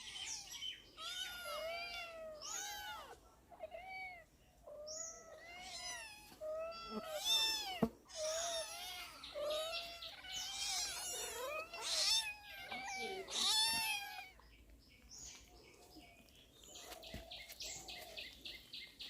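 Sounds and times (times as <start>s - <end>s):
cats meowing: 0.0s - 14.4s.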